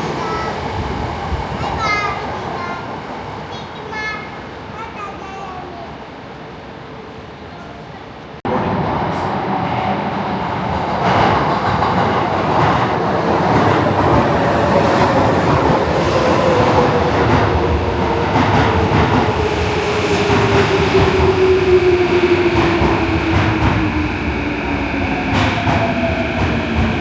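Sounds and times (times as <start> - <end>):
train wheels clattering over track: 10.5 - 27.0.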